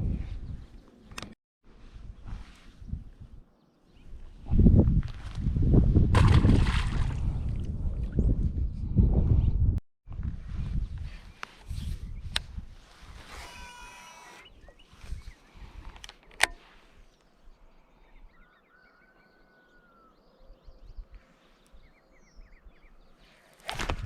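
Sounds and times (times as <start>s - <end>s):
birds chirping and whistling: 13.4s - 15.9s, 17.1s - 23.4s.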